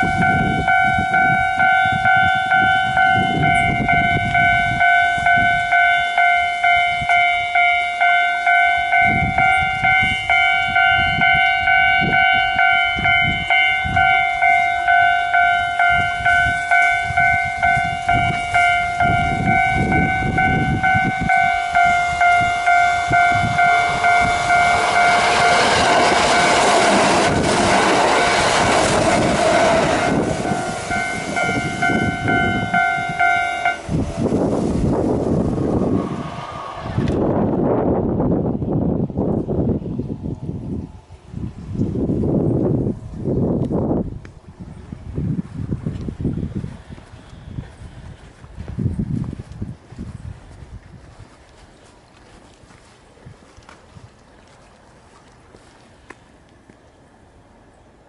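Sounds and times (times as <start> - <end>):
level crossing bell ringing: 0.0 - 25.6, 30.0 - 33.8
train wheels running: 0.0 - 39.5.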